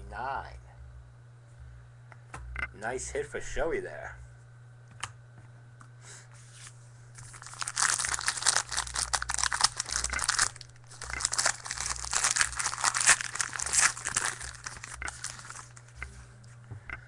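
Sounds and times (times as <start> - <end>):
foil wrapper tearing and crinkling: 7.2 - 15.9.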